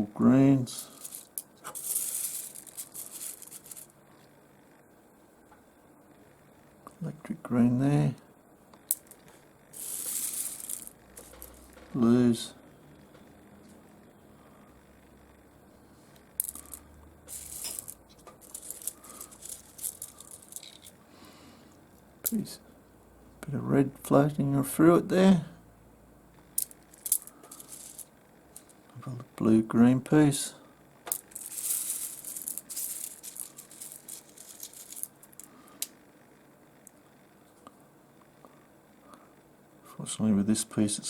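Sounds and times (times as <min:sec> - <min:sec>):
stones clicking and clattering by hand: 0:00.7 - 0:03.9, 0:08.8 - 0:11.9, 0:16.4 - 0:21.0, 0:26.6 - 0:28.8, 0:31.0 - 0:36.0.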